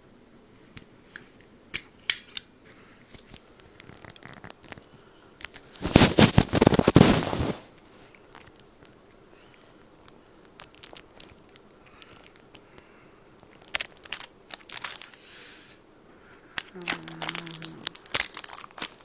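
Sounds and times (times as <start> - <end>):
plastic wrapping tearing: 3.7 - 4.9, 5.5 - 8.6, 10.0 - 12.7, 13.3 - 15.2, 16.6 - 19.0.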